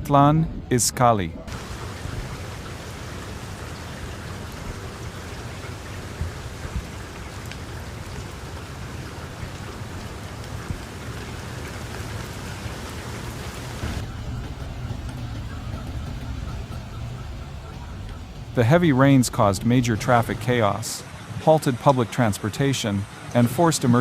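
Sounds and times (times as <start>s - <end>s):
heavy rain falling: 1.4s - 23.4s
faint pattering knocks: 13.8s - 20.6s.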